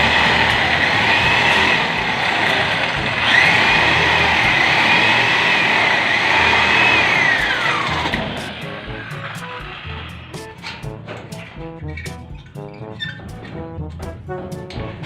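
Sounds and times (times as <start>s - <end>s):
electric drill grinding whine: 0.0s - 10.0s.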